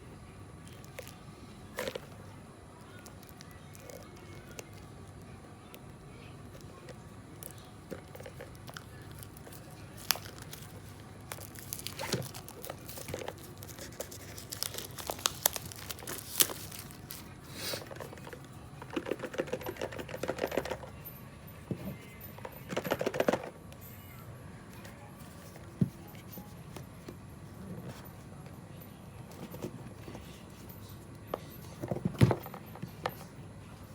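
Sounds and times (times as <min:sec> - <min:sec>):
packaging crinkling and tearing: 0:08.4 - 0:17.4.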